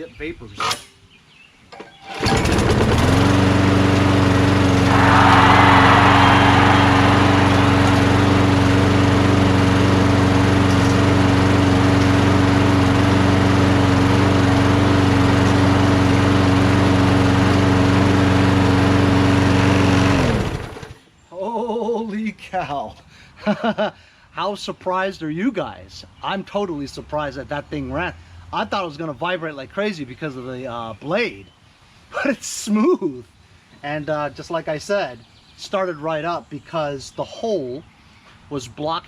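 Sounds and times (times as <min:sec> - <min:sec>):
mower engine running: 0:02.2 - 0:20.9
loud rush of noise: 0:04.6 - 0:11.1.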